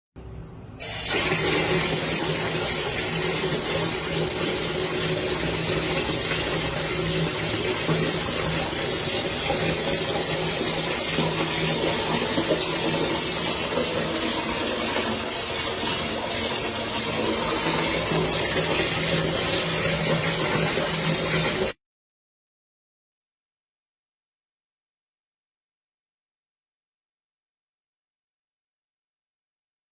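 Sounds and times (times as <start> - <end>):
water spraying from shower head: 0.8 - 21.8.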